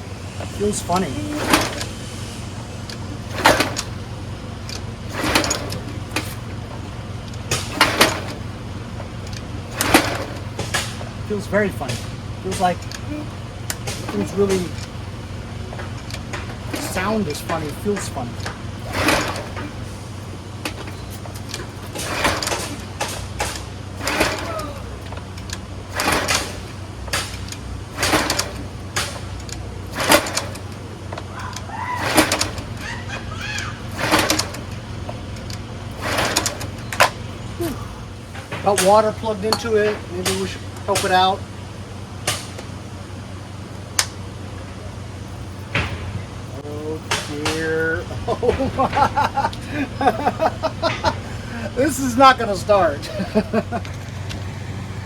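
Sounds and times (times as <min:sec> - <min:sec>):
engine pull-starter whirring: 0:00.0 - 0:55.0
man talking: 0:00.5 - 0:01.8, 0:11.2 - 0:13.3, 0:14.0 - 0:14.8, 0:16.7 - 0:18.5, 0:38.6 - 0:41.4, 0:46.5 - 0:50.8, 0:51.4 - 0:53.7.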